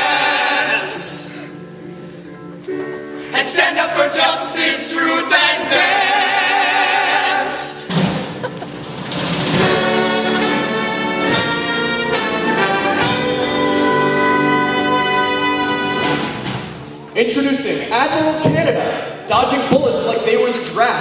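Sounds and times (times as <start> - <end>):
singers holding a note: 0.0 - 1.6, 3.2 - 7.9
brass band playing held chords: 9.1 - 16.8.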